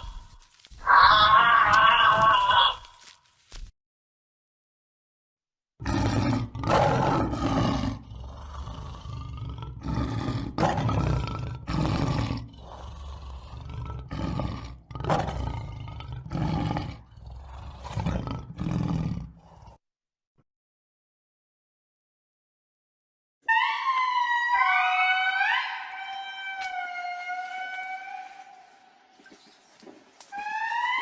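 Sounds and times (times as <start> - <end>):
lion roaring: 5.8 - 19.8.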